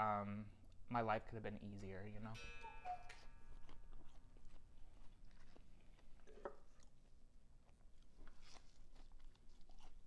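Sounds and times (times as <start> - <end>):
person chewing food: 3.1 - 10.0.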